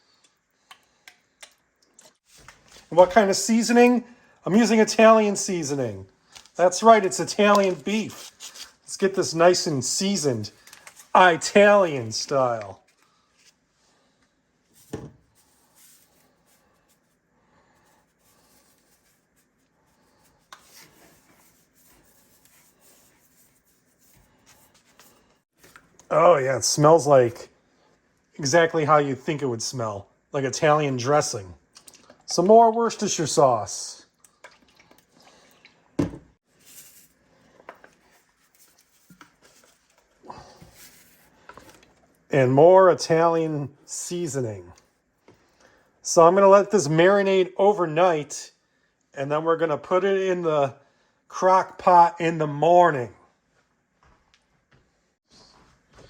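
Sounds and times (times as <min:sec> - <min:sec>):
rubbing and handling meat: 0:04.6 - 0:25.8, 0:36.4 - 0:41.9.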